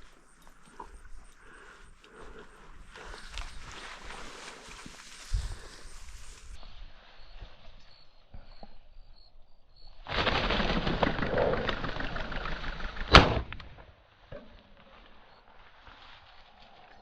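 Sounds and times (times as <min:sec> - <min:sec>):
bird wingbeats: 0:10.1 - 0:13.4
shotgun shot: 0:13.1 - 0:13.6.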